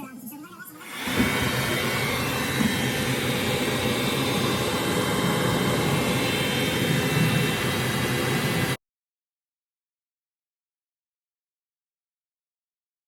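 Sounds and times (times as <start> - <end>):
power tool whirring: 0.8 - 8.8.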